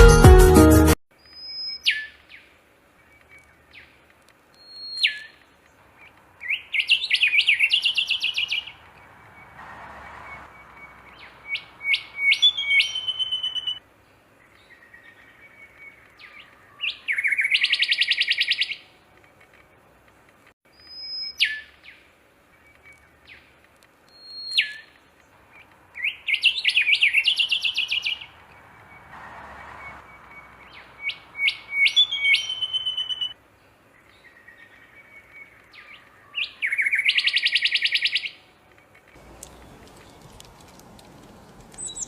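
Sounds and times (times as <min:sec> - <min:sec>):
songbirds whistling: 0:01.2 - 0:02.4, 0:04.6 - 0:05.4, 0:06.1 - 0:13.8, 0:14.5 - 0:18.8, 0:20.8 - 0:22.0, 0:24.1 - 0:25.0, 0:25.6 - 0:33.4, 0:34.0 - 0:38.4, 0:39.1 - 0:42.0
rapid bird trills: 0:06.4 - 0:09.6, 0:10.2 - 0:13.8, 0:25.6 - 0:29.1, 0:29.8 - 0:33.4, 0:39.2 - 0:42.0.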